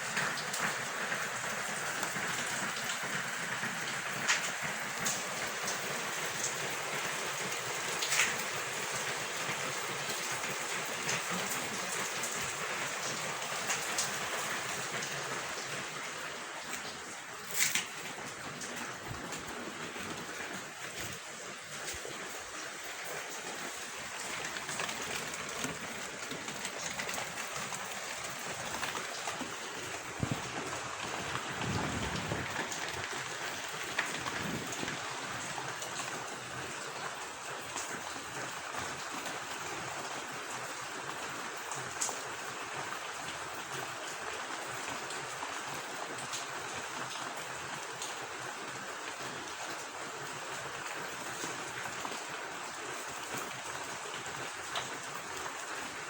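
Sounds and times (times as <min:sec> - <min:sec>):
rain falling: 0:00.0 - 0:56.0
raindrop taps: 0:00.1 - 0:39.5.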